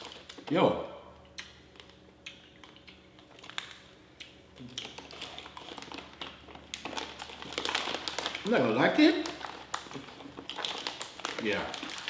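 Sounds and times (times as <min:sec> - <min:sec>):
person chewing hard nuts: 0:01.2 - 0:12.0.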